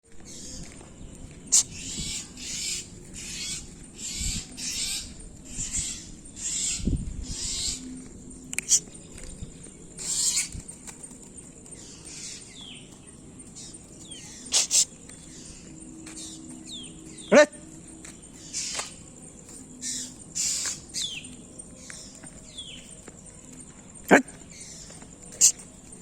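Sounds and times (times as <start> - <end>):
bird screeching and chirping: 1.5 - 7.9, 10.0 - 10.8, 13.6 - 15.6, 19.8 - 20.8, 25.4 - 25.6.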